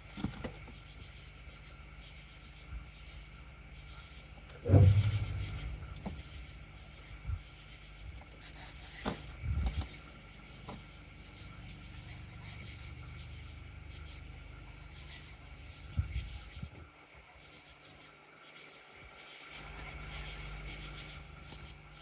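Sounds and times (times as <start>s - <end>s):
crickets chirping: 0.0s - 22.0s
loud low thump: 4.6s - 6.2s.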